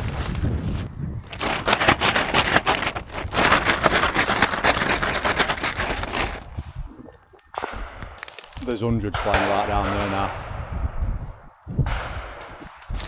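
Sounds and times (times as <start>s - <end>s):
rustling and crackling of undergrowth: 0.0s - 6.7s, 8.1s - 8.9s, 12.4s - 13.0s.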